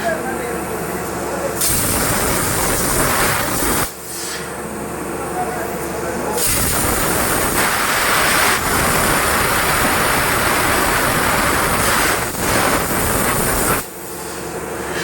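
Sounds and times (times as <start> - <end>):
plasma torch hissing: 1.6 - 4.6, 6.4 - 15.0.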